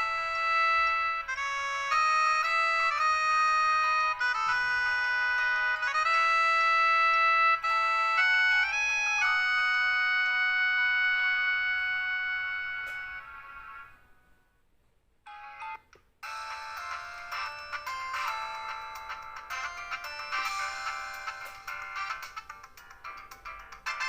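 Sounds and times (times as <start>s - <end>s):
synth ringtone chords: 15.3s - 24.0s.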